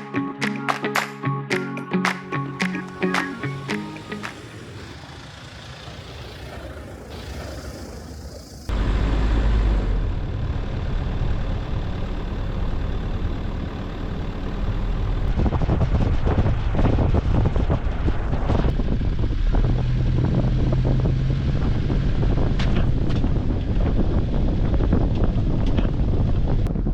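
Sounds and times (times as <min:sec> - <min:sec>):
loud crackling noise: 0:02.1 - 0:09.4, 0:10.0 - 0:26.9
vehicle engine droning: 0:02.4 - 0:26.9.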